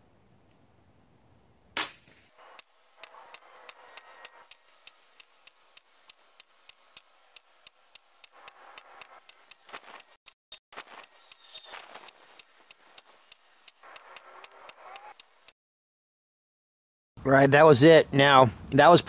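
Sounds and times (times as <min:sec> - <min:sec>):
air rifle shot: 0:01.8 - 0:02.4
steady ticking: 0:02.4 - 0:15.6.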